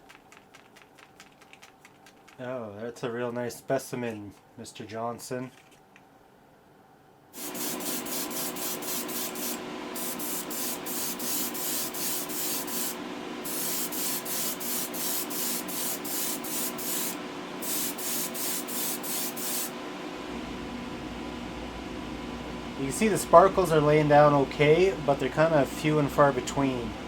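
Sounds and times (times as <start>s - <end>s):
airbrush spraying in pulses: 7.4s - 19.7s.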